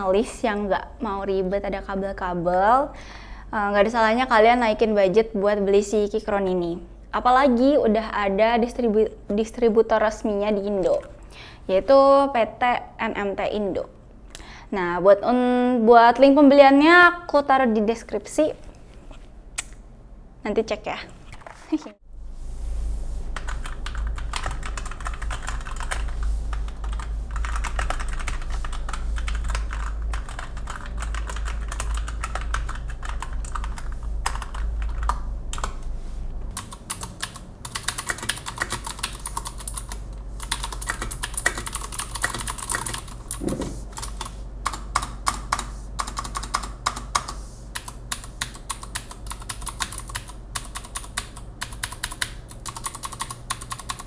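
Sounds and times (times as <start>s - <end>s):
mechanical keyboard typing: 23.4s - 35.8s, 36.6s - 54.0s.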